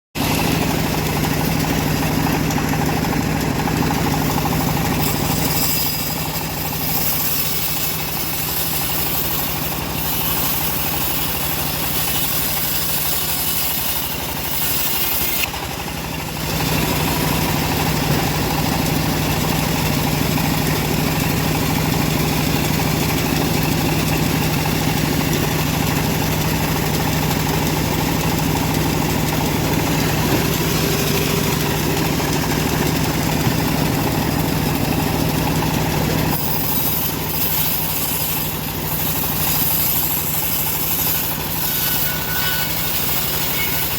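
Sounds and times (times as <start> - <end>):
bandsaw running: 0.2 - 43.9
blade cutting wood hiss: 3.9 - 15.5, 36.2 - 43.9.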